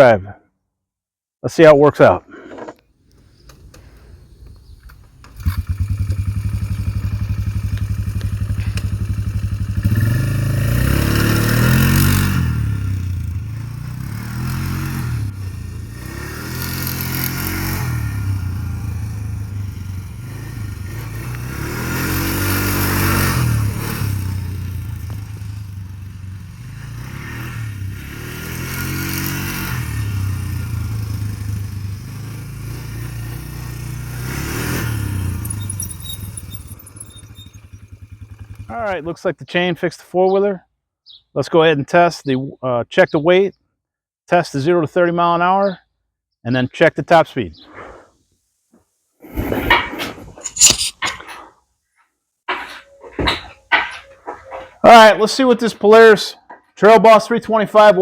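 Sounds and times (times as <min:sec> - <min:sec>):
atv engine revving: 0:02.6 - 0:39.2, 0:52.5 - 0:56.3.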